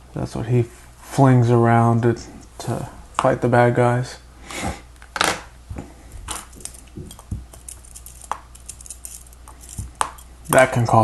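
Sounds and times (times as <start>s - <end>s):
plastic pieces rustling: 6.2s - 10.6s.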